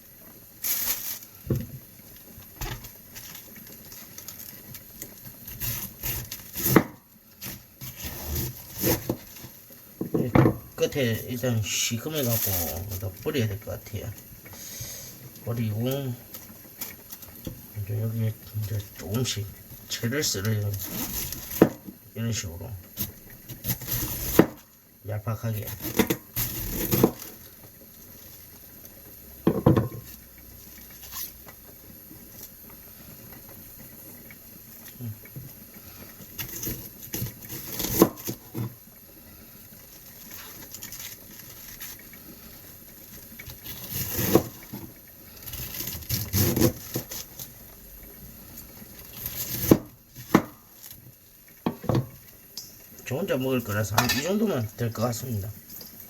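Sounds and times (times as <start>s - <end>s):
knife slicing cabbage on board: 5.5s - 7.0s, 7.8s - 9.2s, 23.6s - 24.6s, 25.6s - 27.3s, 36.4s - 38.7s, 43.6s - 44.7s, 45.5s - 47.4s, 49.2s - 50.6s.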